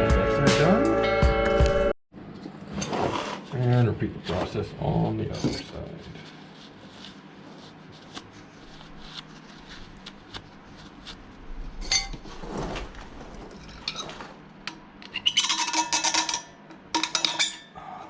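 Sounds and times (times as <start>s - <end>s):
metal tools clinking and scraping: 15.1s - 17.8s.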